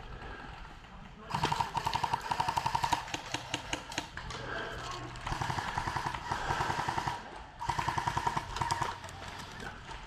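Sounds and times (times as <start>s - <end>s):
airsoft guns firing: 1.3s - 4.5s, 5.2s - 9.7s.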